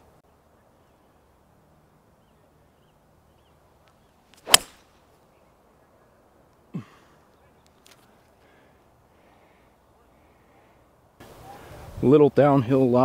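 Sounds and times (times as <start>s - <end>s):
golf club striking ball: 4.3s - 4.8s.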